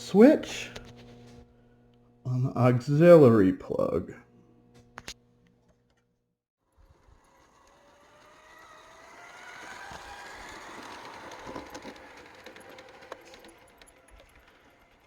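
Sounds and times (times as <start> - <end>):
small electric motor whine: 6.6 - 15.0.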